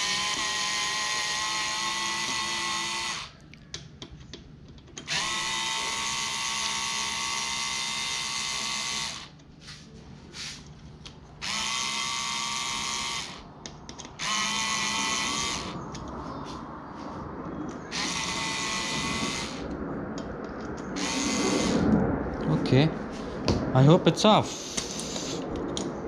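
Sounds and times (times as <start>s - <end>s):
power drill-driver whine: 0.0s - 3.4s, 5.0s - 9.4s, 11.4s - 13.5s, 14.2s - 15.9s, 17.9s - 19.8s, 21.0s - 21.8s.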